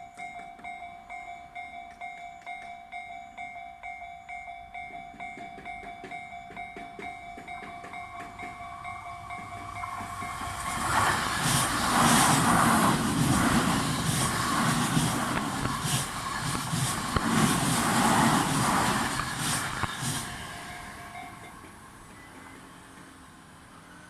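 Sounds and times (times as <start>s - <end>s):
level crossing alarm ringing: 0.0s - 10.7s
train passing over crossing: 0.1s - 24.0s.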